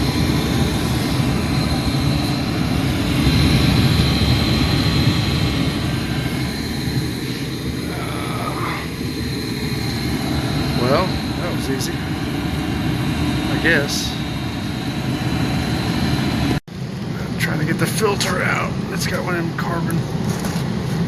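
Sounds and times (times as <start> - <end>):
faint high whine: 0.0 - 20.1
furnace burners and fans rumbling: 0.0 - 21.0.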